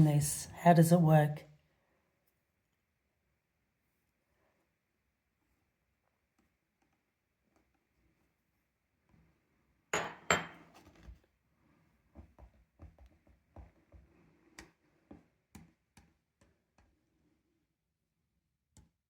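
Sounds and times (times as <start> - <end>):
tools tapping on hard surface: 10.0 - 10.7.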